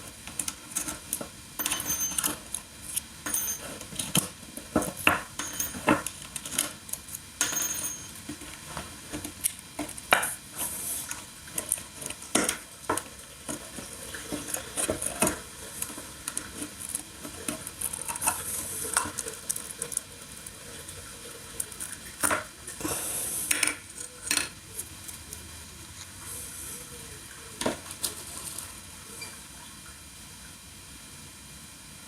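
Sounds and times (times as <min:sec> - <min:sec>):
clicks and clinks of small tools: 0:01.6 - 0:02.6, 0:05.4 - 0:06.7.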